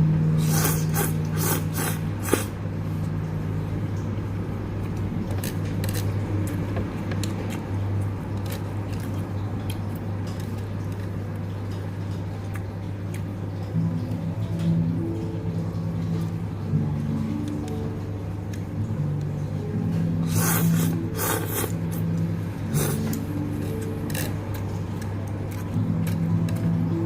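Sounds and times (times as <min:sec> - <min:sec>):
steady low hum: 0:00.0 - 0:27.0
noodle slurping: 0:00.4 - 0:02.6, 0:20.2 - 0:22.1, 0:22.7 - 0:24.4.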